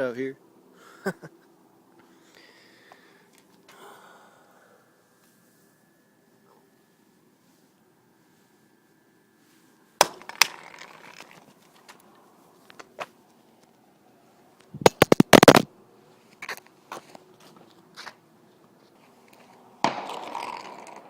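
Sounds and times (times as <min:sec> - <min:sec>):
sharp cracks and knocks: 0:10.0 - 0:12.0, 0:14.7 - 0:15.7, 0:19.8 - 0:21.0.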